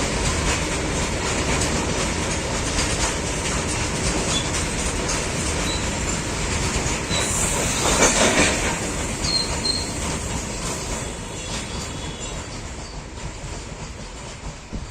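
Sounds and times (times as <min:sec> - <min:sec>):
train wheels clattering: 0:00.0 - 0:14.9
high wheel squeals: 0:09.2 - 0:10.1, 0:10.8 - 0:13.2.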